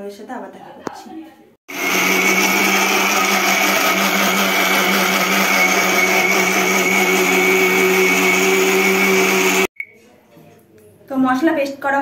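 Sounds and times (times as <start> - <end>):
mixer grinder motor running: 1.7 - 9.7.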